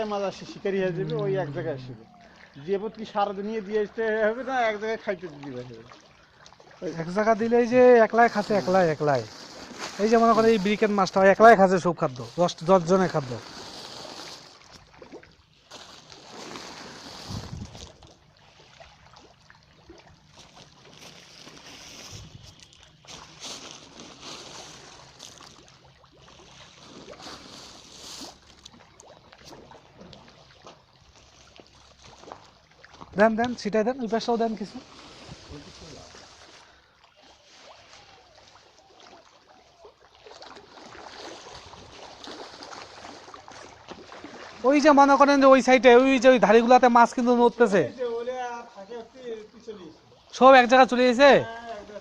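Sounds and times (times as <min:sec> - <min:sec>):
water splashing at pond surface: 0:00.0 - 0:52.0
fish stirring at water surface: 0:12.1 - 0:33.2.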